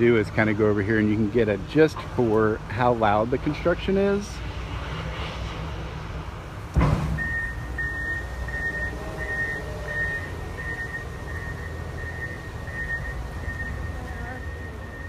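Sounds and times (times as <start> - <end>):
low engine rumble: 0.0 - 15.0
heavy bang: 6.7 - 7.6
reversing alarm beeping: 7.2 - 15.0.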